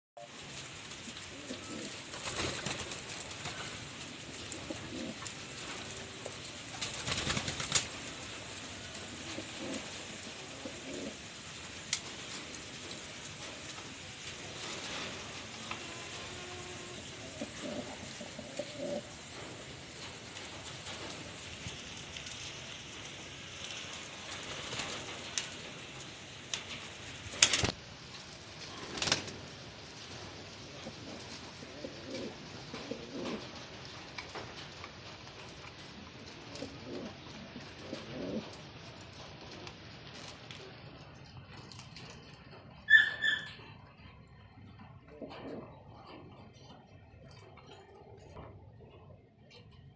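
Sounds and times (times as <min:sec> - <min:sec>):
hissing background: 0:00.2 - 0:41.1
rustling: 0:00.2 - 0:42.8
pigeons cooing: 0:01.0 - 0:13.1, 0:13.9 - 0:21.2, 0:30.6 - 0:39.5, 0:45.0 - 0:46.7.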